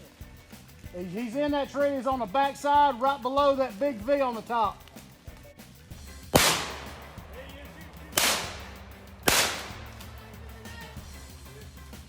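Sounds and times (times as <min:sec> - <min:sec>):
gunshots with echo: 0:06.3 - 0:10.2.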